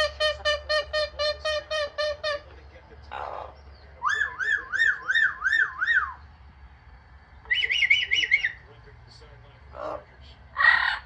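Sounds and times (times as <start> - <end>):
parrot whistling: 4.0 - 6.2, 7.5 - 8.6.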